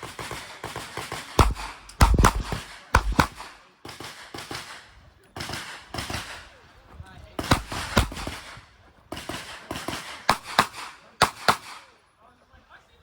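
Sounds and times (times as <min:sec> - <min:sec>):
faint gunshot pops: 0:01.4 - 0:03.5
revolver shots: 0:01.4 - 0:03.5.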